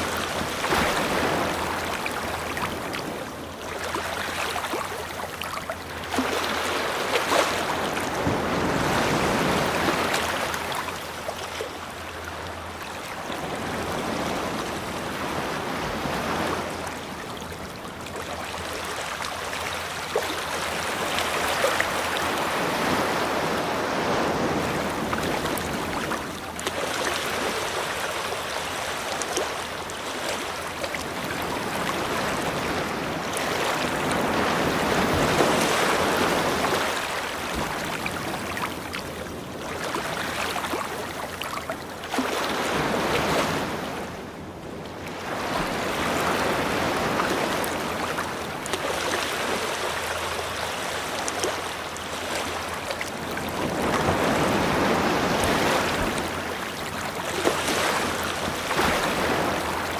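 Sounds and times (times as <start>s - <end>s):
ocean waves breaking on beach: 0.0s - 59.9s.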